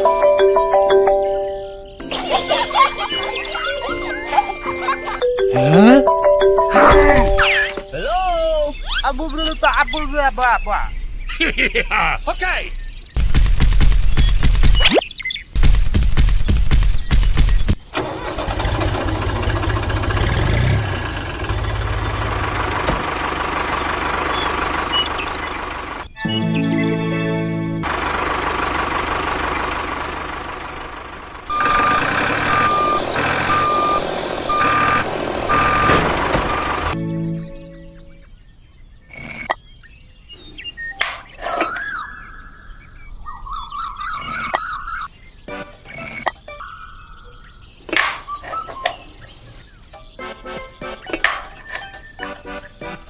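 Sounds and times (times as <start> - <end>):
bird-like chirps and whistles: 7.4 - 11.4, 40.2 - 45.1, 45.9 - 50.2, 50.8 - 52.9
tractor engine knocking: 17.7 - 26.1, 27.8 - 37.0.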